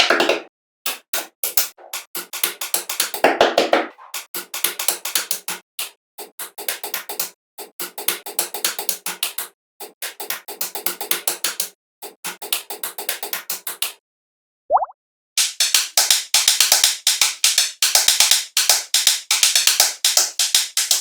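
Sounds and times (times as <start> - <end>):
music with clicky percussive beat: 0.0 - 5.6, 6.2 - 14.0, 15.4 - 21.0.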